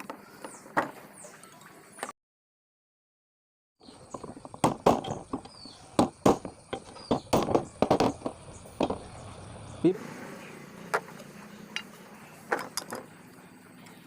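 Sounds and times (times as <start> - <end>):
sharp knocks and taps on engine parts: 4.1 - 9.2, 10.9 - 13.2.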